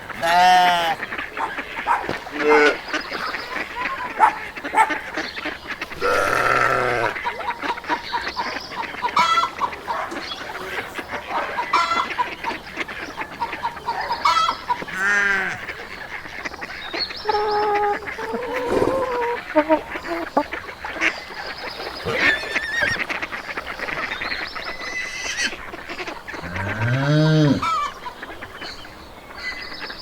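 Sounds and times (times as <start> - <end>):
short poultry calls: 0.1 - 8.0, 10.5 - 15.8, 24.8 - 28.1
deep animal calls: 5.9 - 7.2, 17.2 - 20.5, 22.0 - 23.0, 26.3 - 27.9.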